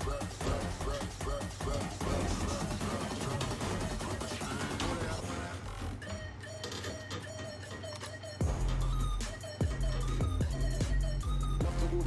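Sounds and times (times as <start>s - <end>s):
electronic hip-hop instrumental: 0.0s - 12.0s.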